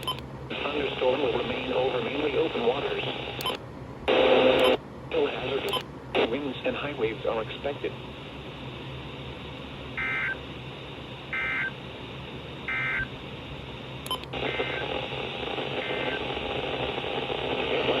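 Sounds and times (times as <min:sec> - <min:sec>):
click: 0:00.0 - 0:00.3, 0:03.4 - 0:03.6, 0:04.6 - 0:04.8, 0:05.7 - 0:05.9, 0:14.0 - 0:14.4
radio hiss: 0:00.5 - 0:03.4, 0:04.1 - 0:08.2, 0:13.8 - 0:18.0.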